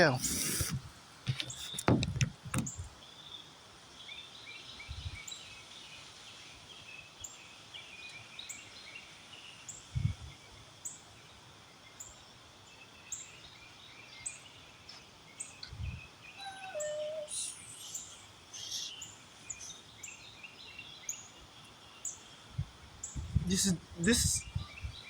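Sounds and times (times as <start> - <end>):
small birds chirping: 0.0 - 25.0
wind buffeting microphone: 0.2 - 3.0, 4.8 - 5.3, 9.9 - 10.4, 15.6 - 16.1, 22.5 - 25.0
gusty storm wind: 9.9 - 10.4, 15.6 - 16.1, 22.5 - 25.0.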